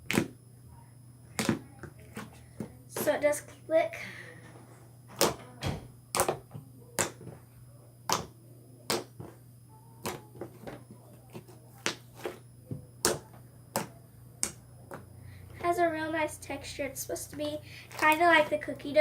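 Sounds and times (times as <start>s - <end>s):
slime clicking and popping: 8.1s - 8.3s, 10.0s - 10.3s.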